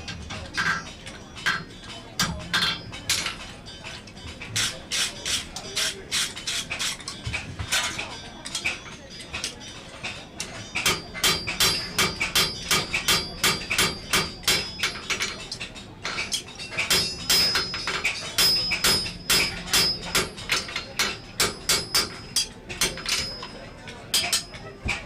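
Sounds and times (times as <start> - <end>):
hammer striking iron on anvil: 0.6 - 3.4, 10.8 - 15.4, 16.1 - 24.7.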